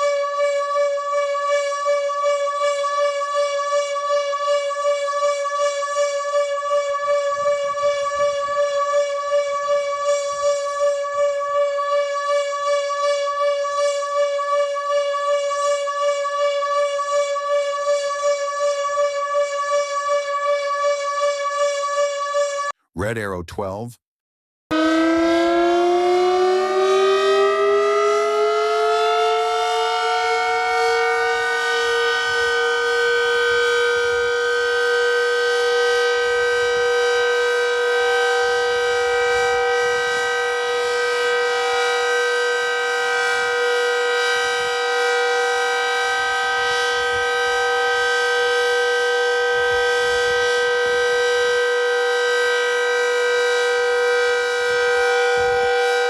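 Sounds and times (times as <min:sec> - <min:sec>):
warning siren rising in pitch: 0:24.8 - 0:56.0.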